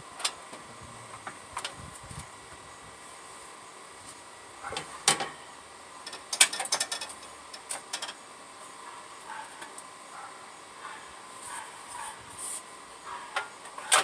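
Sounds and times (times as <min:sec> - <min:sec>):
metal clinks and rattles: 0:06.0 - 0:08.2.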